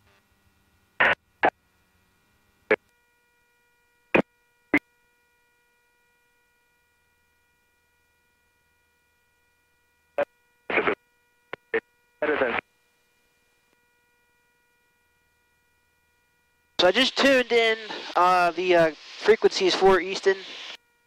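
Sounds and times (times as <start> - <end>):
faint electrical whine: 0.0 - 21.0
radio squelch crackling blips: 1.0 - 1.2, 10.2 - 12.6, 16.8 - 20.8.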